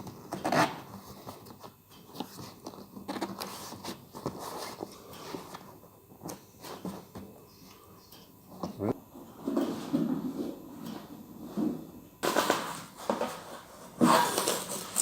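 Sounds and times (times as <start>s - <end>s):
dry suit crinkling and scraping: 11.5s - 15.0s.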